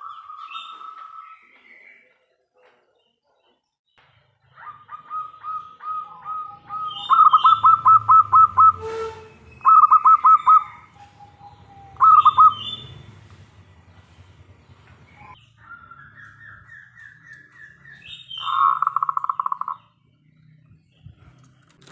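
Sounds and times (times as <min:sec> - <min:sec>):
dove cooing: 0:04.5 - 0:09.0, 0:09.7 - 0:13.2, 0:15.2 - 0:19.8.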